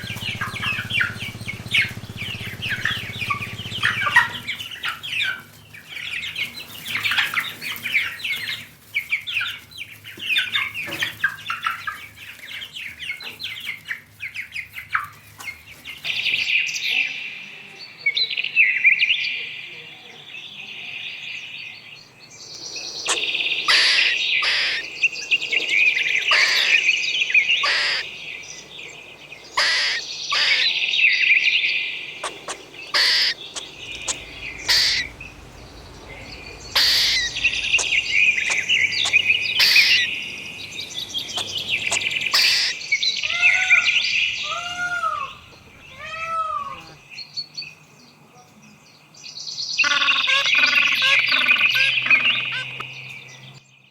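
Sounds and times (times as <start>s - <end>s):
sharp clicks: 0.0s - 4.6s, 32.2s - 35.3s, 36.0s - 40.2s
small birds chirping: 0.0s - 53.9s.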